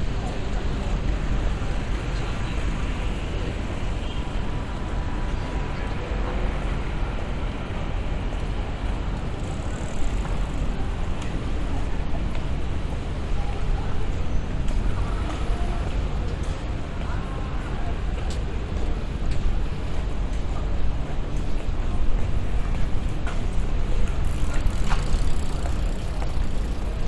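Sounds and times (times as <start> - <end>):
traffic rumble: 0.0 - 27.0
indistinct voices: 22.7 - 27.0.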